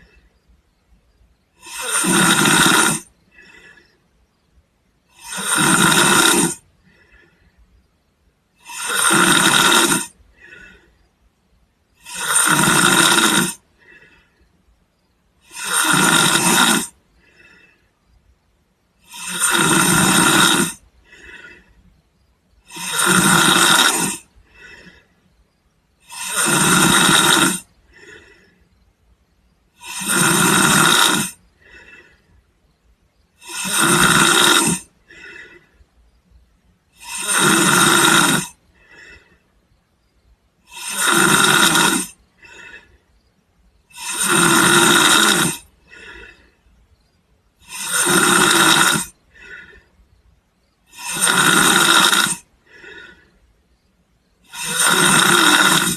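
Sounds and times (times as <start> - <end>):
man snoring: 1.5 - 4.0, 5.1 - 7.3, 8.6 - 10.9, 12.0 - 14.3, 15.4 - 17.8, 19.0 - 21.7, 22.6 - 25.1, 26.0 - 28.6, 29.7 - 32.2, 33.4 - 35.8, 36.9 - 39.4, 40.6 - 43.0, 43.9 - 46.5, 47.6 - 49.9, 50.8 - 53.4, 54.4 - 55.9.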